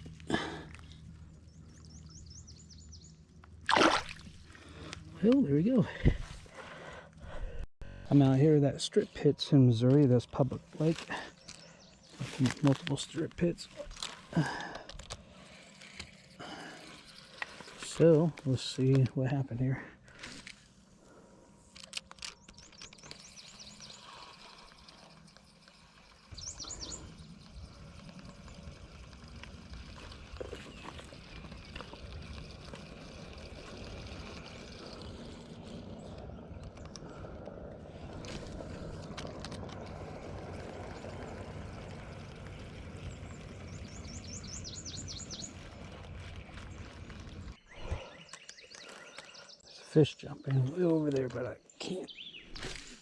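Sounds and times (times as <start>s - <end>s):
bird trilling: 26.2s - 27.8s, 43.6s - 45.7s
low rumble: 26.4s - 47.9s.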